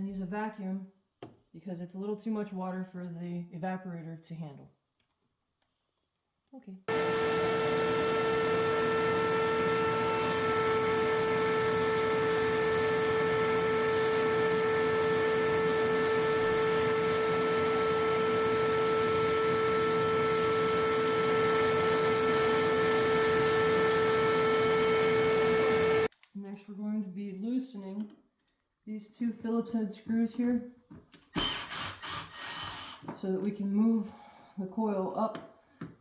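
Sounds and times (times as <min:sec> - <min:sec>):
vacuum whining: 0:06.9 - 0:26.1.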